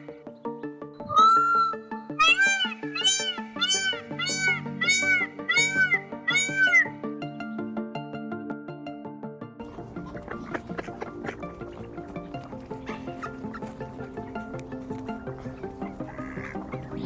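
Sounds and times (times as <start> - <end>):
background music: 0.0 - 17.0
meow-like animal calls: 1.1 - 6.9.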